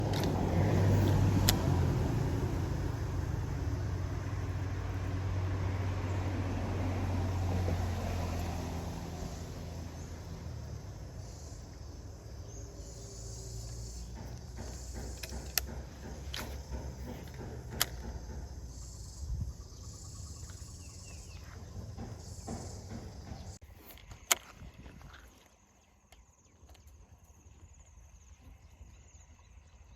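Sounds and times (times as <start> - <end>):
sharp clicks: 0.0 - 0.4, 1.0 - 1.8, 14.2 - 18.4
vehicle passing: 0.0 - 19.0
insects buzzing: 0.0 - 29.9.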